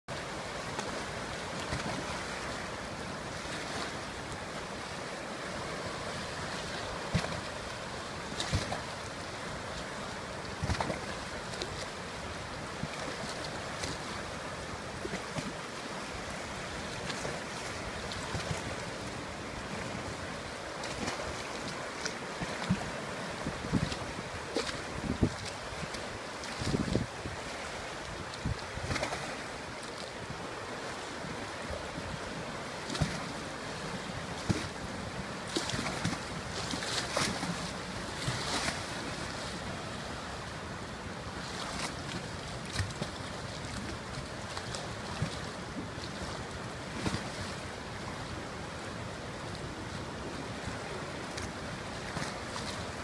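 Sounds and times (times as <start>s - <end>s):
river rushing: 0.1s - 53.0s
wind buffeting microphone: 22.4s - 27.5s.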